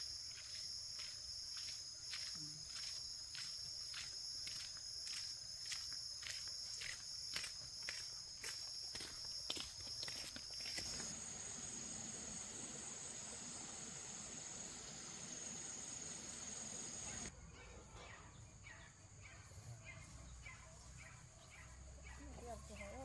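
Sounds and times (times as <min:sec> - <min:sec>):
insects droning: 0:00.0 - 0:17.4.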